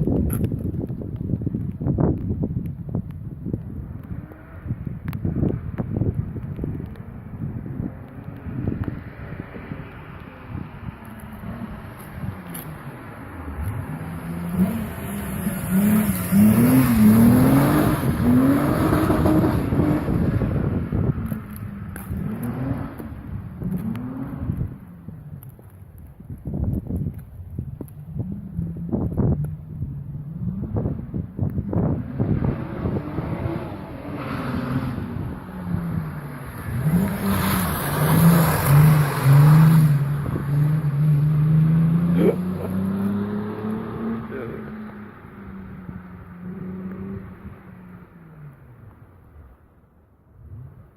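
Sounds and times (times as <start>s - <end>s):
car engine accelerating through gears: 11.0s - 24.9s, 30.2s - 48.7s.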